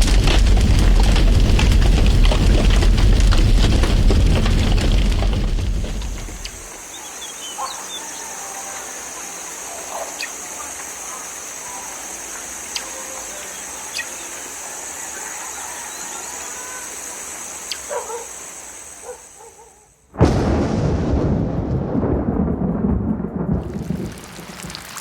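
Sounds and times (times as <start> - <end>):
high-pitched hiss: 6.4 - 19.9
bird chirps: 9.9 - 10.7, 12.6 - 14.4, 17.6 - 18.2.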